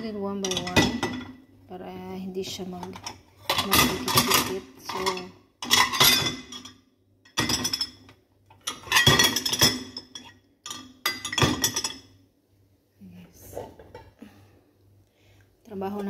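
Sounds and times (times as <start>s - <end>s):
dishes clinking and clattering: 0.4s - 1.4s, 2.8s - 12.2s, 13.6s - 14.2s.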